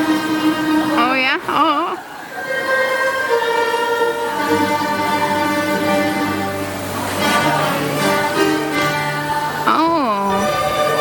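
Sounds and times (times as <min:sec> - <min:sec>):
orchestral background music: 0:02.5 - 0:11.0.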